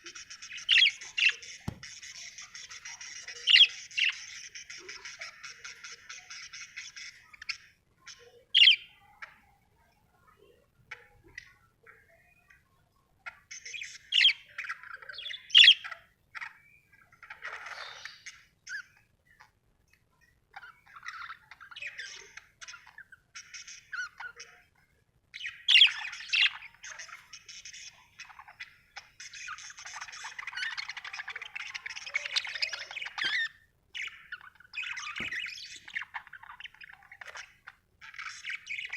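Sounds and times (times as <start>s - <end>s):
budgerigar chirping and chattering: 0.0s - 9.5s, 13.2s - 19.5s, 20.5s - 38.9s
sharp bird calls: 0.0s - 9.6s, 25.4s - 38.9s.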